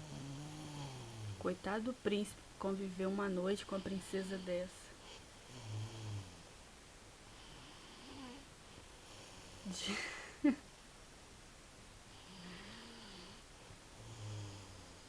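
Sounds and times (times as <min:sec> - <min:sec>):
person snoring: 0:00.0 - 0:01.5, 0:05.5 - 0:06.5, 0:12.2 - 0:13.4, 0:14.0 - 0:15.0
soft breathing: 0:03.5 - 0:06.6, 0:12.1 - 0:15.0.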